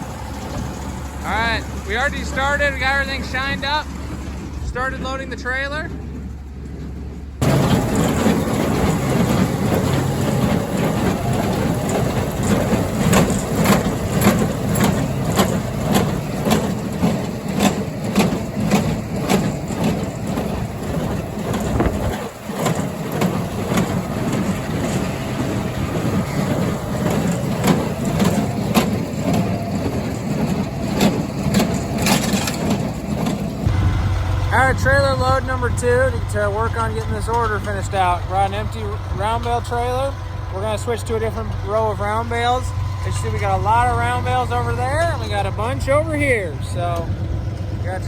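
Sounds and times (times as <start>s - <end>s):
clatter of shredding and baling: 0.0s - 33.7s
tractor engine under load: 0.0s - 48.0s.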